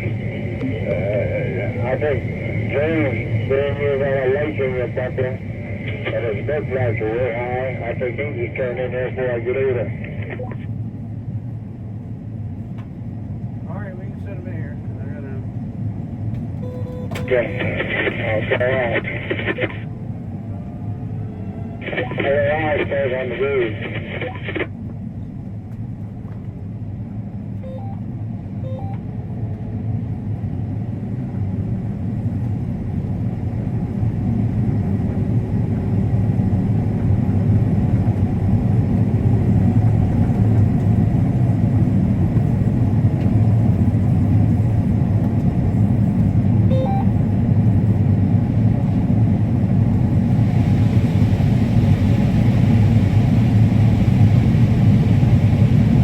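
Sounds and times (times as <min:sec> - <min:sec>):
combine harvester droning: 0:00.0 - 0:56.0.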